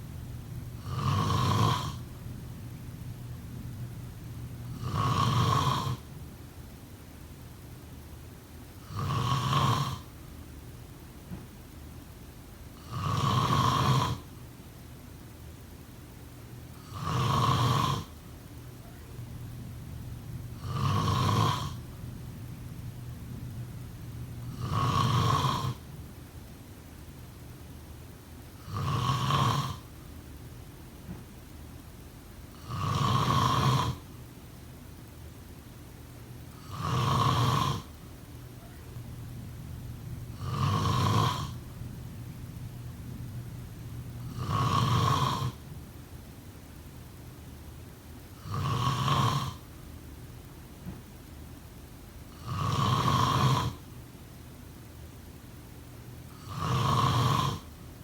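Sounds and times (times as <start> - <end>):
low steady hum: 0.0 - 58.0
person snoring: 0.8 - 2.1, 4.6 - 6.1, 8.8 - 10.1, 12.8 - 14.3, 16.8 - 18.1, 20.2 - 22.0, 23.6 - 25.9, 28.6 - 29.8, 32.5 - 34.1, 36.6 - 37.9, 39.0 - 45.7, 48.4 - 49.6, 52.3 - 53.8, 56.3 - 57.7.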